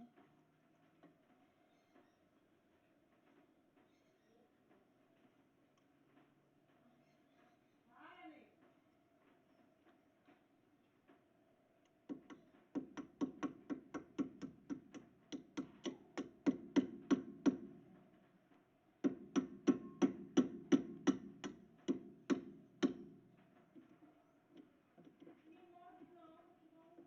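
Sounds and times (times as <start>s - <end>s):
metal hammer tapping: 12.1s - 17.9s, 19.0s - 23.2s.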